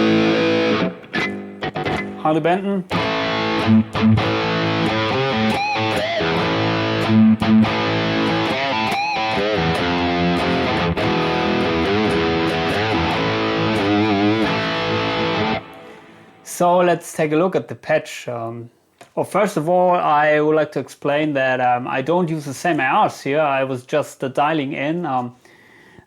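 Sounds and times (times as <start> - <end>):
distorted electric guitar lead: 0.0 - 2.2, 2.9 - 16.5.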